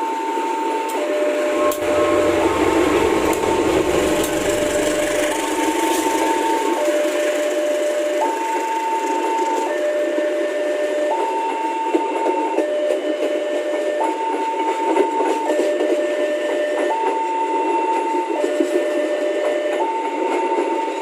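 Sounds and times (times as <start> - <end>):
train running over rails: 0.0 - 21.0
two-tone level crossing alarm: 0.0 - 21.0.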